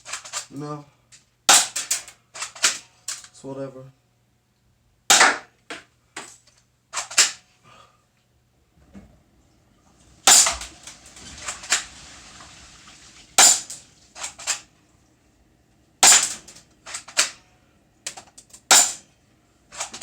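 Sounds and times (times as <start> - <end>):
airsoft gun shots: 5.1 - 5.5, 10.3 - 10.7, 13.4 - 13.8, 16.0 - 16.5, 18.7 - 19.0
pellets striking and bouncing: 10.3 - 10.9, 13.4 - 14.5.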